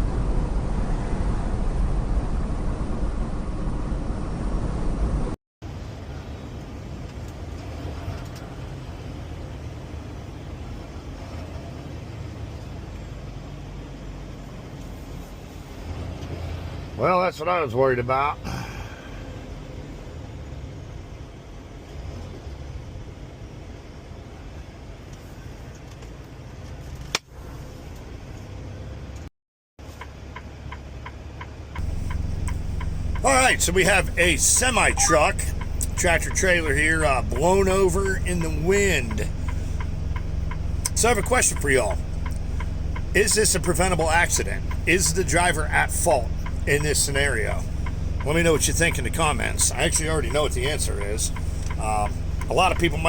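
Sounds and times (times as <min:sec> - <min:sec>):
truck engine and road noise: 0:00.0 - 0:53.0
turn signal ticking: 0:30.0 - 0:53.0
truck engine rumble from cab: 0:31.7 - 0:53.0.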